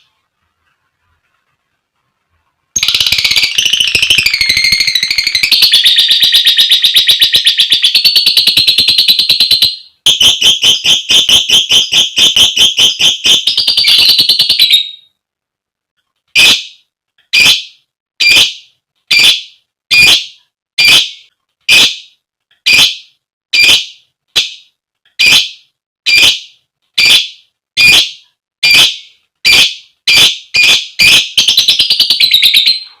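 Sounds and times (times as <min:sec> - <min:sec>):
lovebird calling: 0:02.8 - 0:15.0.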